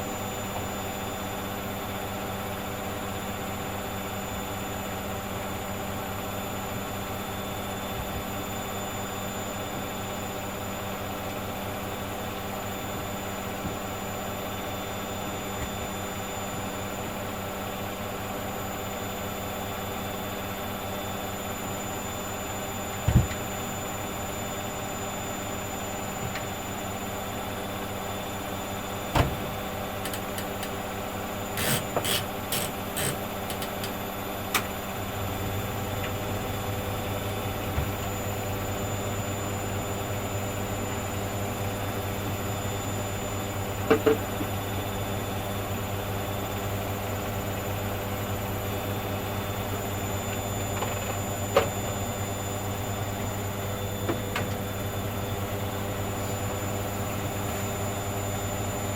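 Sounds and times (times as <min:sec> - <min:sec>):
washing machine motor hum: 0:00.0 - 0:58.9
clicks and rattles: 0:30.0 - 0:30.8, 0:31.6 - 0:34.0.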